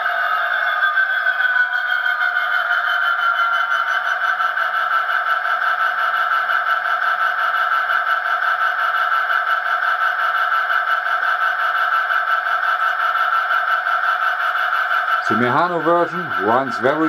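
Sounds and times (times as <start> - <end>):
diesel engine through small speaker: 15.0 - 17.0.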